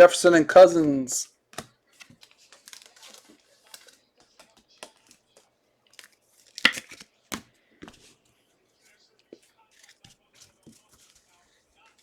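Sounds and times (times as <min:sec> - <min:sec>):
cards and wrappers rustling: 0:00.6 - 0:12.0
plastic wrapper crinkle: 0:01.9 - 0:05.1, 0:05.8 - 0:07.2.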